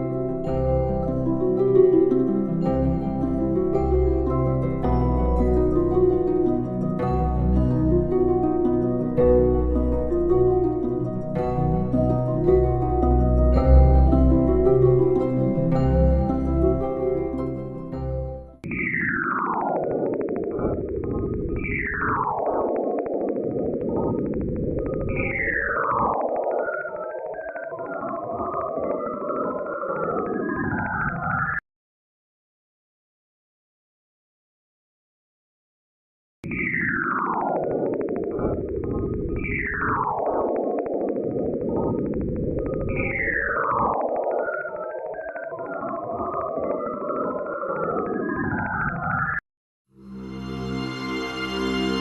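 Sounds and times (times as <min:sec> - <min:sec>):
dense crackling static: 0:18.6 - 0:31.6, 0:36.4 - 0:49.4.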